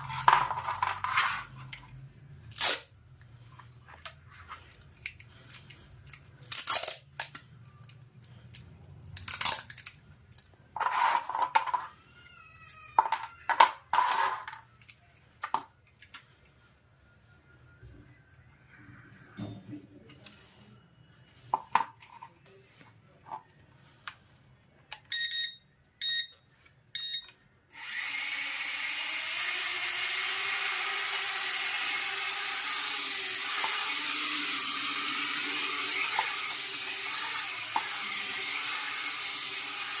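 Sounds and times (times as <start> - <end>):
short electronic beeps: 25.1 - 26.4, 27.0 - 27.3
toy drone motors whirring: 27.7 - 40.0.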